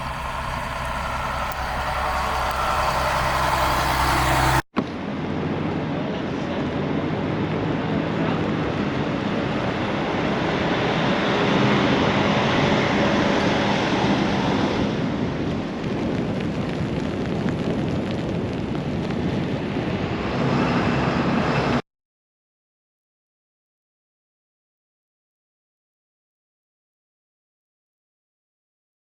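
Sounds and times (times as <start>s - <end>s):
faint low hum: 0.0s - 4.6s
blizzard wind roaring: 0.0s - 21.8s.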